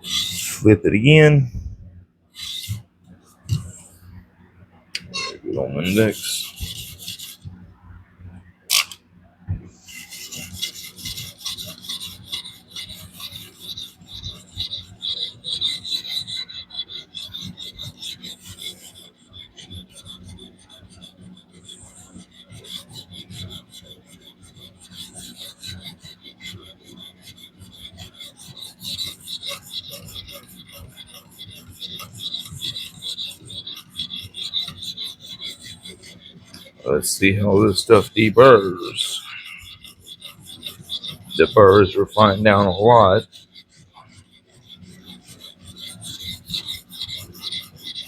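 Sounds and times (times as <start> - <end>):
sharpener scraping knife blade: 0.0 - 0.6, 2.4 - 2.8, 5.0 - 7.5, 8.7 - 9.0, 9.8 - 48.0.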